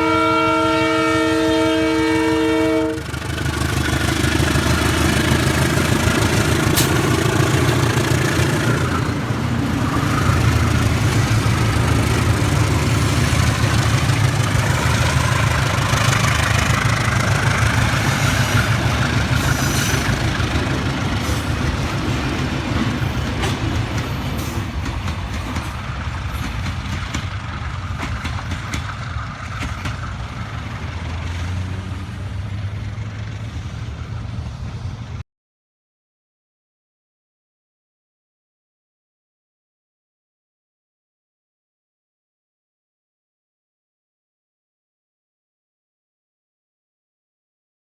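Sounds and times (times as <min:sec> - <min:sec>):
locomotive engine drone: 0:00.0 - 0:35.2
train wheels rumbling on rails: 0:00.0 - 0:35.2
train clicks: 0:02.4 - 0:35.1.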